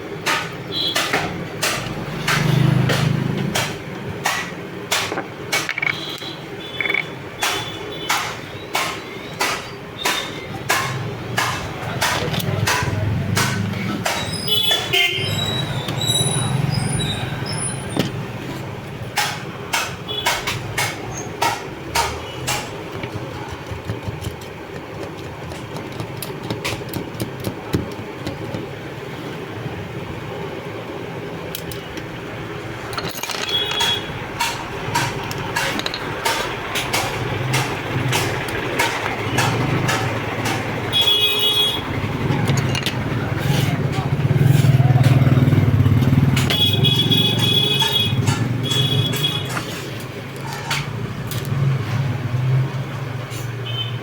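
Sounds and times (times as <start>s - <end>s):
steady clacking: 32.8s - 49.7s.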